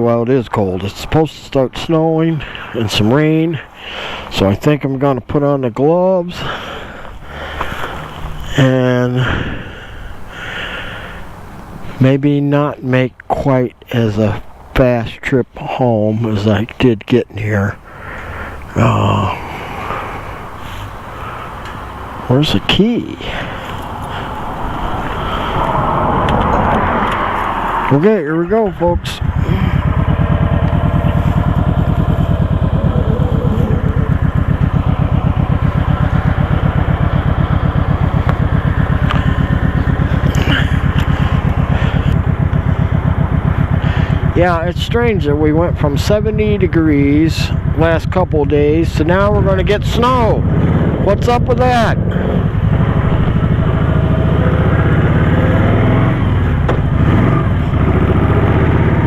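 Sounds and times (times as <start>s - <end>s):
motorcycle engine running: 6.6s - 11.9s, 17.7s - 59.0s.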